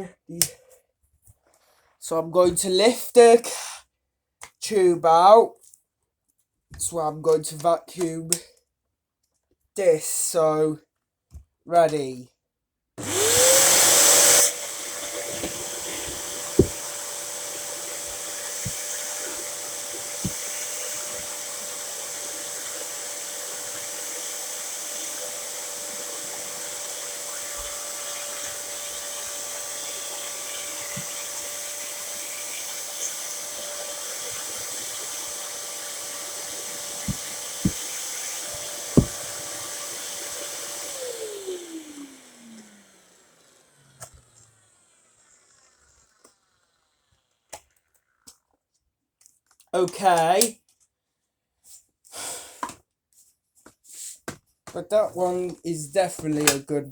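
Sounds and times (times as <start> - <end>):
motor winding down: 13.0 - 47.5
vacuum cleaner whining: 13.0 - 47.5
sharp knocks: 39.0 - 39.3.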